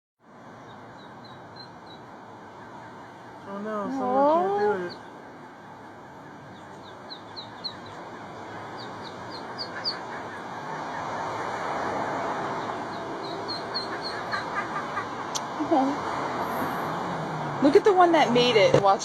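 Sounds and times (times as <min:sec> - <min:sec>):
steady rushing background noise: 0:00.3 - 0:19.0
ducklings peeping: 0:00.6 - 0:15.2.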